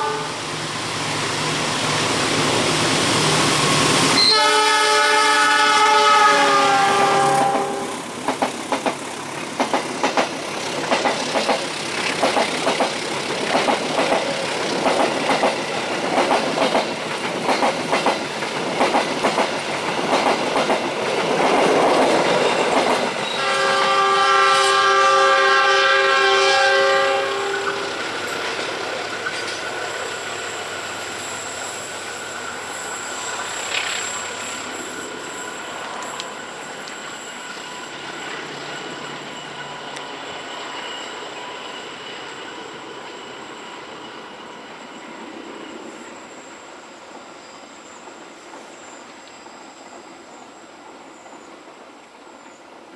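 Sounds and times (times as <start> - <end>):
multi-tone train horn: 0.0 - 0.6, 4.1 - 8.1, 23.1 - 28.0
train wheels clattering: 6.6 - 26.0, 26.7 - 44.6
wheel squeal: 17.4 - 51.5.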